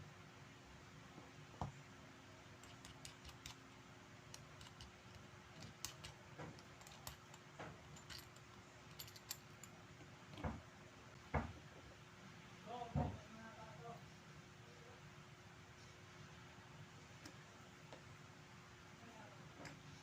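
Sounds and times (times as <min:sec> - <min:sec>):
light metallic clicks of tools: 0:02.6 - 0:10.5.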